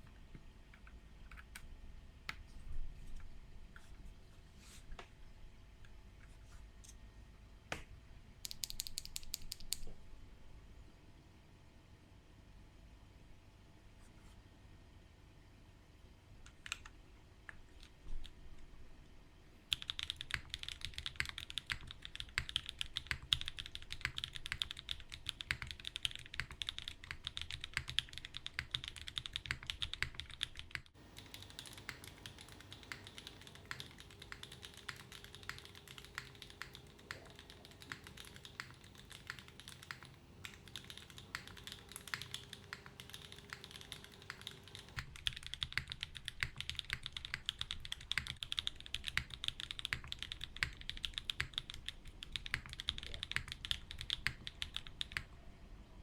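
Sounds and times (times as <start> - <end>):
mechanical keyboard typing: 8.4 - 9.8, 19.7 - 55.3.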